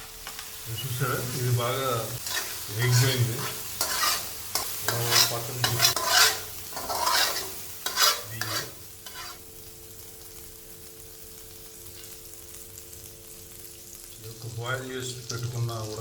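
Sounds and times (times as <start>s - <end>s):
paste sizzling in a pan: 0.0s - 16.0s
spatula scraping a pan: 2.2s - 9.5s.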